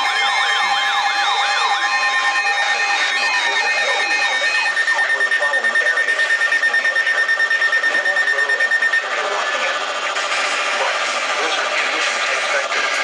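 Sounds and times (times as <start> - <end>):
pulsing high-pitched alarm tone: 0.0 - 13.0
radio hiss and crackle: 3.0 - 13.0.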